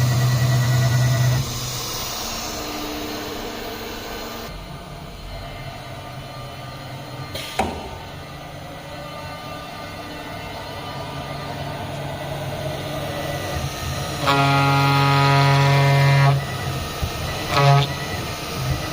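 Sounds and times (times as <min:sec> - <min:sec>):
cnc router humming: 0:00.0 - 0:05.6, 0:10.9 - 0:18.9.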